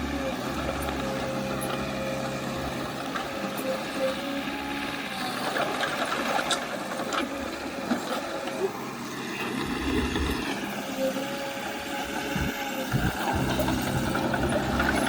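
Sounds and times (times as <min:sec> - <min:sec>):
heavy machine engine running: 0:00.0 - 0:15.0
deep rumble: 0:12.3 - 0:15.0.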